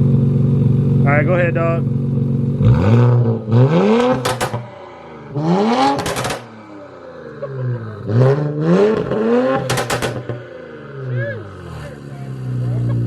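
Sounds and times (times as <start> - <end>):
car engine revving: 0.0 - 13.0
exhaust crackles: 0.1 - 13.0.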